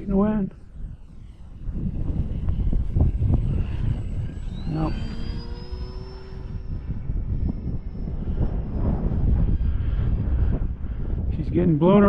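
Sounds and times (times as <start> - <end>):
model plane motor whine: 0.0 - 12.0
wind rumbling on microphone: 0.0 - 12.0.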